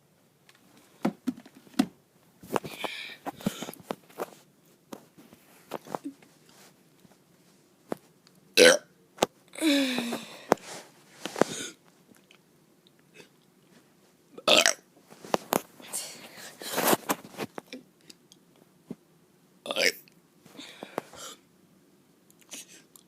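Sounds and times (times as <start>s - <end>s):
child burping: 8.6s - 8.9s, 9.6s - 10.3s, 14.4s - 14.8s.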